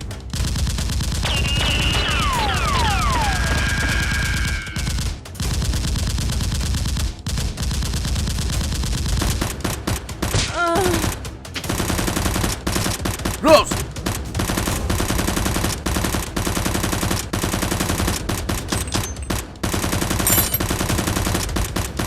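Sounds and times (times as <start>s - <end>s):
rapid automatic gunfire: 11.7s - 13.4s, 14.3s - 22.0s.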